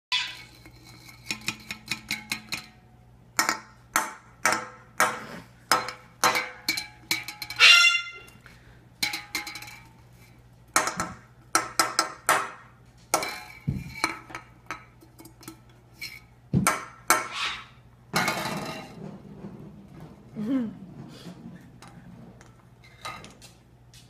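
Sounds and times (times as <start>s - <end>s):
metal can clanking: 0.1s - 2.8s, 5.7s - 8.4s, 9.0s - 10.0s, 18.1s - 19.2s.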